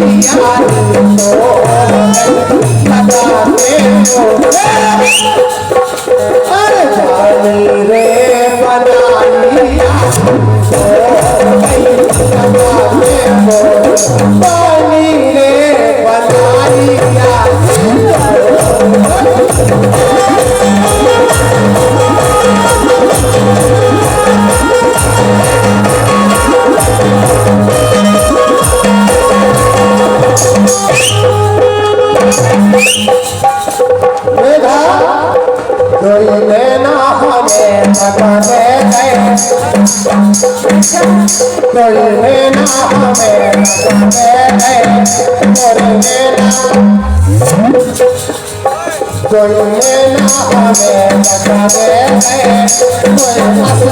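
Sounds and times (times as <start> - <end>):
steady drum rhythm: 0.0 - 53.9.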